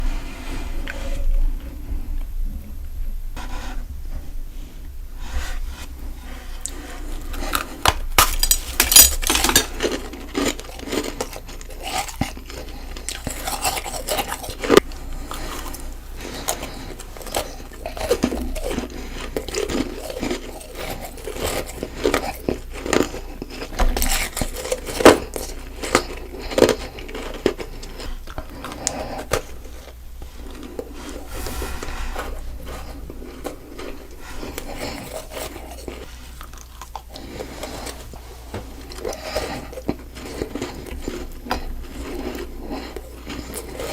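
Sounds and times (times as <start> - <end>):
crunching of frozen snow being chewed: 6.6 - 31.3, 33.4 - 38.2, 38.8 - 43.9.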